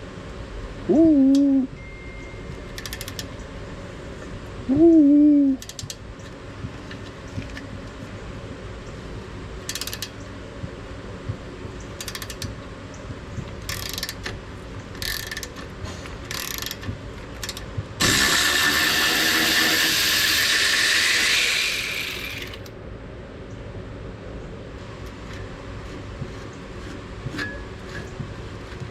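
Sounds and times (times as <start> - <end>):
hand ratchet clicking: 2.7 - 3.3, 5.6 - 6.0, 9.7 - 10.2, 12.0 - 12.6, 13.6 - 18.4.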